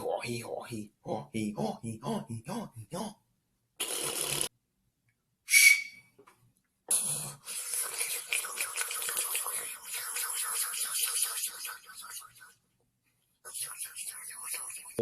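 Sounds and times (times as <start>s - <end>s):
man making mouth clicks and hiss: 6.9s - 12.5s, 13.5s - 15.0s.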